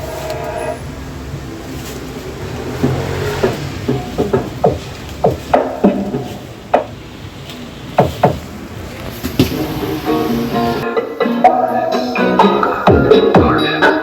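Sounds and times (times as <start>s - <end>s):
steady background noise: 0.0s - 14.0s
irregular knocks and thuds: 2.5s - 9.6s.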